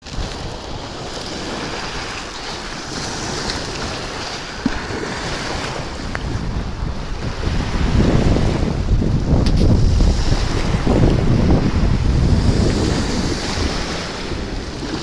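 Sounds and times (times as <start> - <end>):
surf breaking on shore: 0.0 - 15.0
wind buffeting microphone: 0.0 - 15.0.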